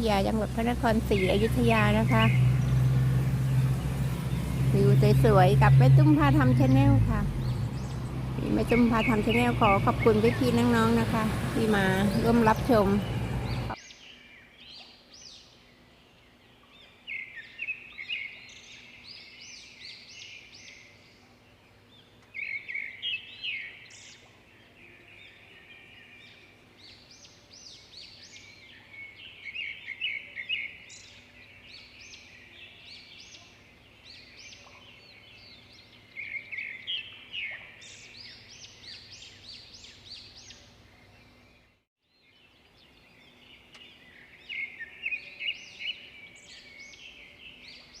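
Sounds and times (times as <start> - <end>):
birds chirping: 0.0 - 48.0.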